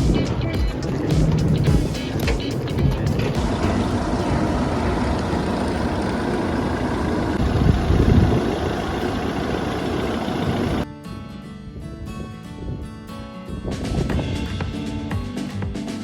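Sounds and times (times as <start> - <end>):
music: 0.0 - 5.3, 10.8 - 16.0
large engine running: 0.0 - 10.8
loud rushing noise: 3.4 - 10.8.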